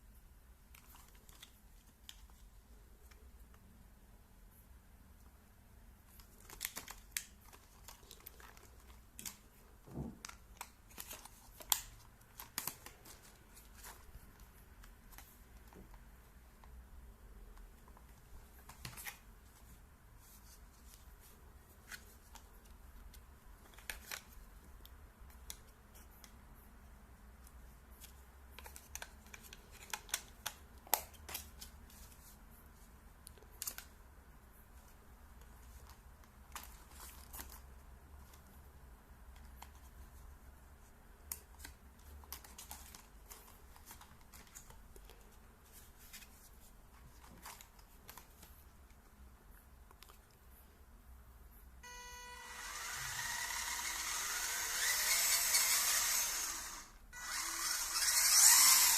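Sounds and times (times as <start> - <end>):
low steady hum: 31.6 - 58.2.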